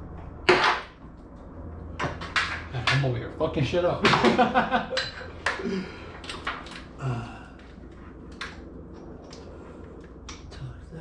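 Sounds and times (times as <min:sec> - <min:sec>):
hands handling parts clicking: 0:05.4 - 0:06.9.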